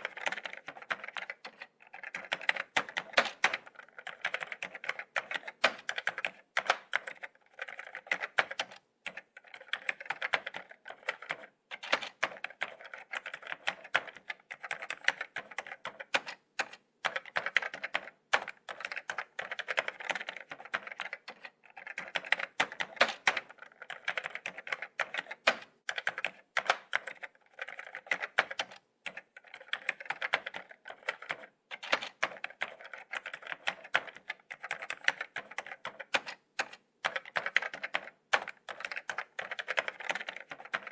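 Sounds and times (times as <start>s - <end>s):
laptop keyboard typing: 0.0s - 40.9s.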